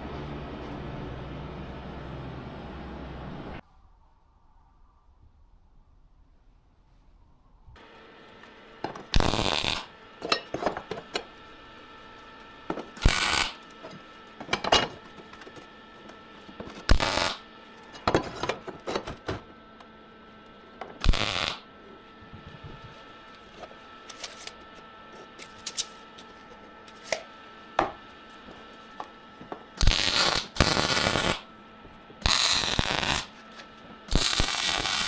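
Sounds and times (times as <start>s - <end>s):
harsh metalworking noise bursts: 9.1s - 11.0s, 12.7s - 15.0s, 16.8s - 17.4s, 21.0s - 21.6s, 29.8s - 31.4s, 32.2s - 33.3s, 34.1s - 35.0s.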